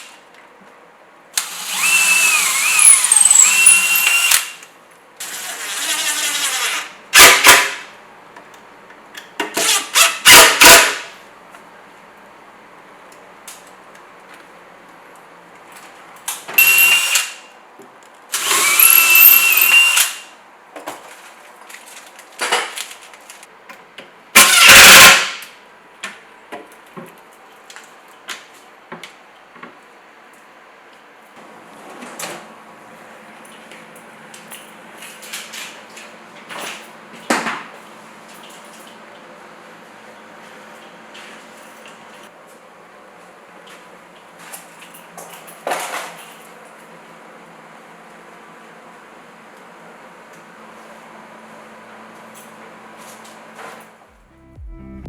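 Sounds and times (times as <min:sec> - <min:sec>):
whining power tool: 0:01.4 - 0:04.6.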